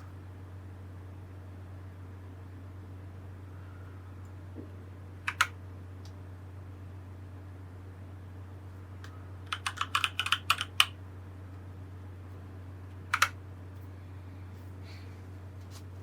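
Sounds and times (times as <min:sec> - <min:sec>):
mechanical keyboard clicks: 0:05.3 - 0:05.6, 0:09.5 - 0:11.0, 0:13.1 - 0:13.4.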